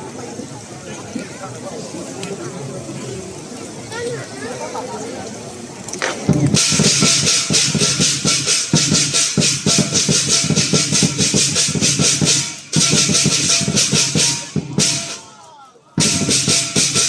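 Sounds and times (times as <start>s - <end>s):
drum beating: 6.0s - 15.3s, 16.0s - 17.0s
cymbals clashing: 6.3s - 15.3s, 16.0s - 17.0s.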